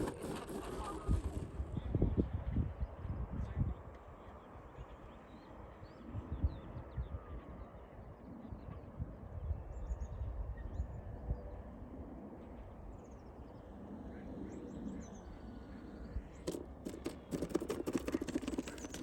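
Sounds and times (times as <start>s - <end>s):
wind buffeting microphone: 0.0s - 3.8s.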